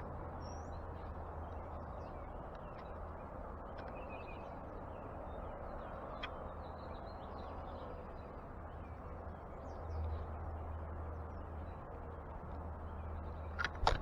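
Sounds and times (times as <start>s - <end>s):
steady background rumble: 8.6s - 14.0s.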